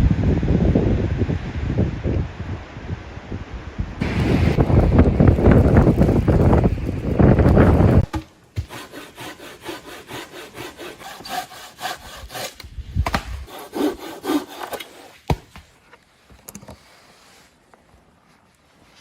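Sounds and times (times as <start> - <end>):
hand saw cutting wood: 7.5 - 15.5.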